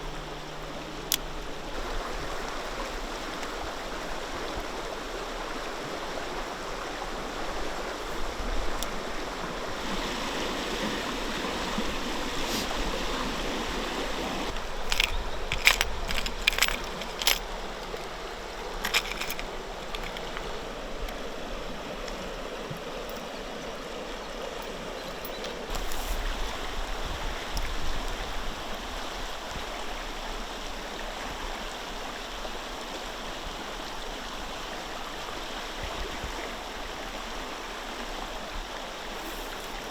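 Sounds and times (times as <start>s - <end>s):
river water flowing: 0.0s - 39.9s
sharp clicks and knocks: 14.5s - 17.4s.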